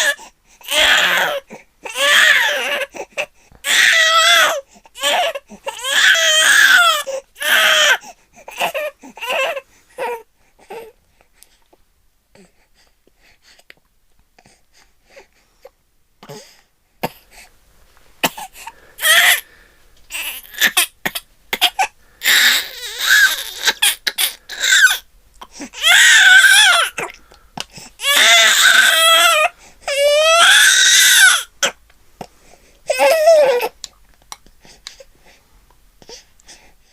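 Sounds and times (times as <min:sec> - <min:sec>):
baby wailing: 0:00.0 - 0:02.9, 0:03.6 - 0:10.9, 0:19.0 - 0:19.4, 0:20.1 - 0:21.0, 0:21.6 - 0:25.0, 0:25.7 - 0:27.1, 0:28.0 - 0:31.8, 0:32.9 - 0:33.8
baby sniffling: 0:18.2 - 0:19.5, 0:20.1 - 0:28.6.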